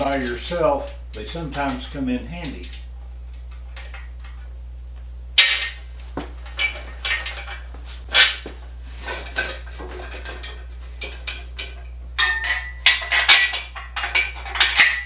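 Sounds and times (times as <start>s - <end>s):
steady low hum: 0.0s - 15.0s
steel clanking and scraping: 6.4s - 15.0s
metallic ring: 11.3s - 15.0s.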